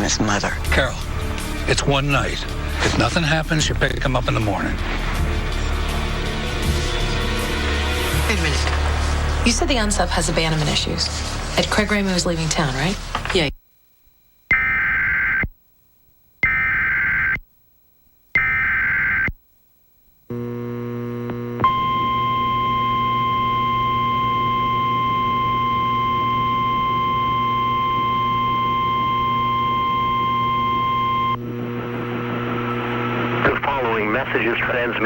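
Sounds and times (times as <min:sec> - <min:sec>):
steady attention tone: 0:13.5 - 0:34.5
digital data tone bursts: 0:14.5 - 0:15.5, 0:16.4 - 0:17.4, 0:18.4 - 0:19.4.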